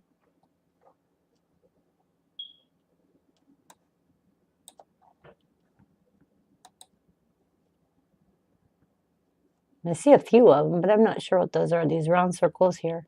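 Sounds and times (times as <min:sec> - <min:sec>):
mouse clicks: 0:04.6 - 0:04.9, 0:06.6 - 0:07.0.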